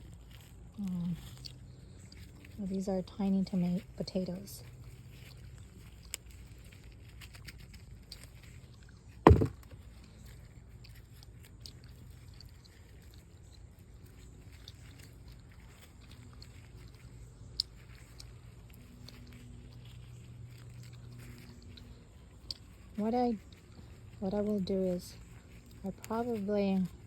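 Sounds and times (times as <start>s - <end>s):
hands rustling potting soil: 0.0s - 27.0s
loud thump: 9.3s - 9.7s.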